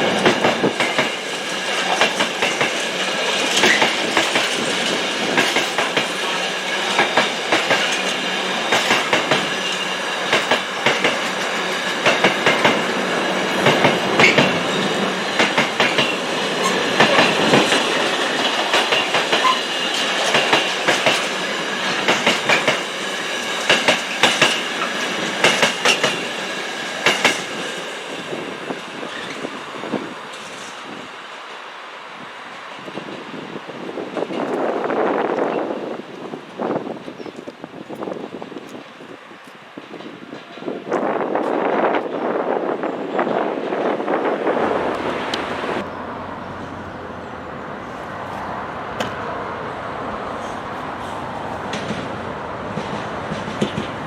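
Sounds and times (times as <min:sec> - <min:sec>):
train wheels clicking over rail joints: 0:00.0 - 0:29.6, 0:50.4 - 0:54.0.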